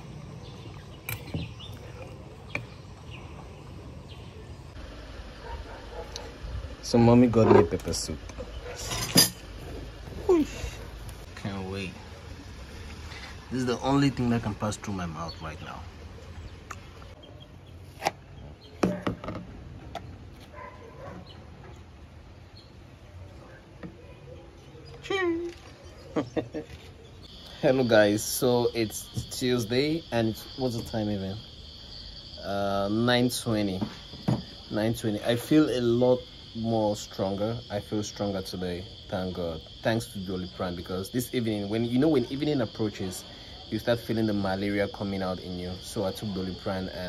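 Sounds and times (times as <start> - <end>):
hard objects knocking: 18.8 - 20.1, 33.8 - 34.6.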